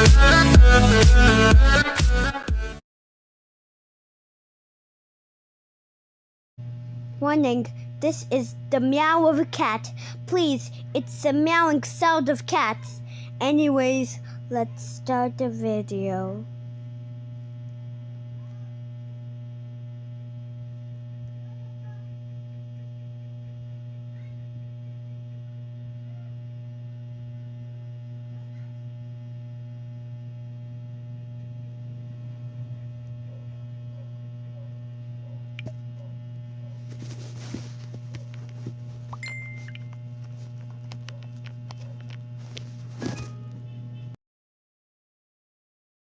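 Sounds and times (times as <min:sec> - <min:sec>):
low electrical hum: 0:06.6 - 0:44.2.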